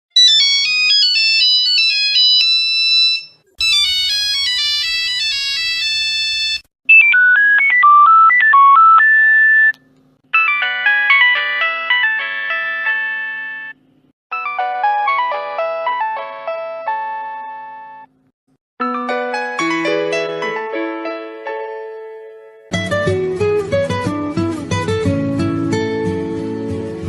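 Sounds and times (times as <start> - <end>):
mobile phone ringtones: 0.2 - 9.7, 10.3 - 15.3.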